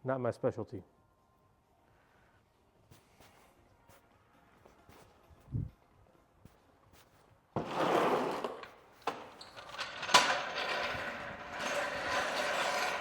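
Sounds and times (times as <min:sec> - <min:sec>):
hands and tools scraping: 0:07.6 - 0:13.0.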